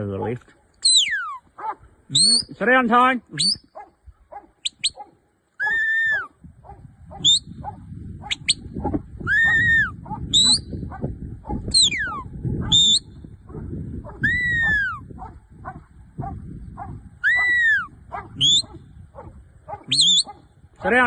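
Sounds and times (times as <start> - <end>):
shepherd's whistle: 0.8 - 1.4, 2.1 - 2.5, 3.4 - 3.7, 4.6 - 5.0, 5.6 - 6.3, 7.2 - 7.5, 9.2 - 10.7, 11.7 - 13.2, 14.2 - 15.0, 17.2 - 18.7, 19.9 - 20.3
dogs barking: 1.5 - 2.0, 3.7 - 20.6.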